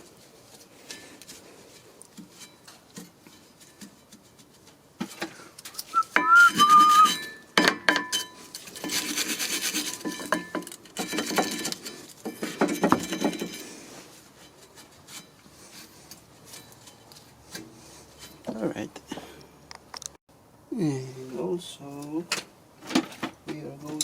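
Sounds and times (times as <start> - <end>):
scrubbing on metal: 8.7 - 10.4.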